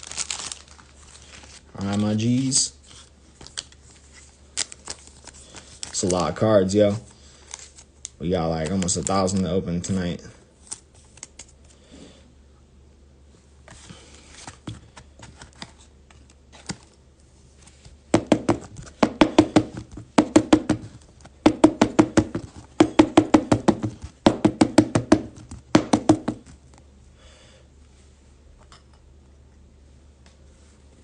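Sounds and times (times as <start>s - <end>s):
hands rapping on a tabletop: 18.2s - 26.5s.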